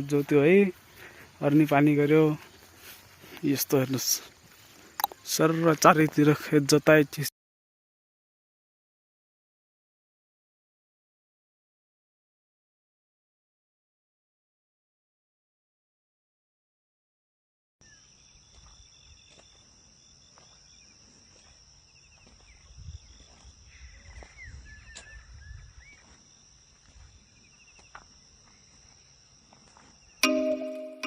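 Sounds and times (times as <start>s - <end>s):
high insect drone: 17.8s - 30.2s
loud music with plucked notes: 30.2s - 31.0s.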